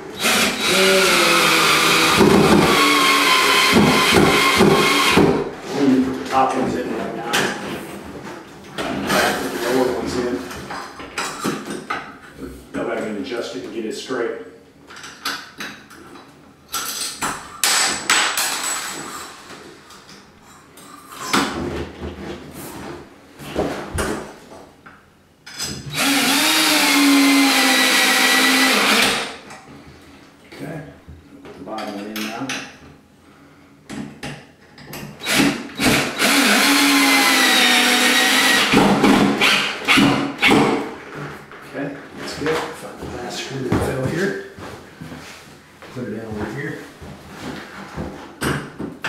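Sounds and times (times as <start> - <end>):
power drill driving a screw: 0.2 - 5.2, 25.9 - 29.3, 35.2 - 40.5.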